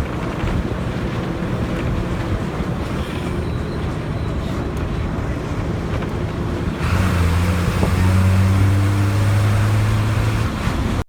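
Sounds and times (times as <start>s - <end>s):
wind and road rumble: 0.0s - 11.0s
deep engine hum: 6.3s - 11.0s.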